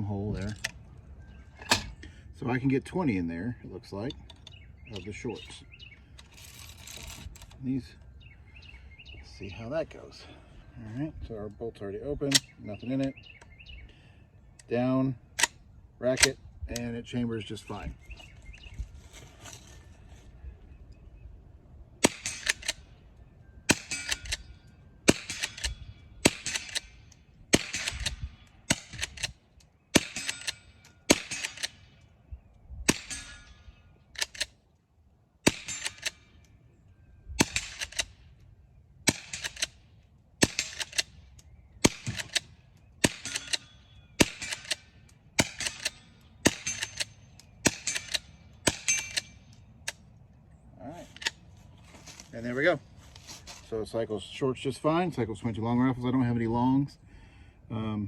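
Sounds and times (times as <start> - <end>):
rifle shots cracking: 22.0 - 22.8, 25.1 - 32.0, 35.4 - 36.2, 39.1 - 39.8, 40.4 - 41.1, 41.8 - 43.6, 44.2 - 49.4.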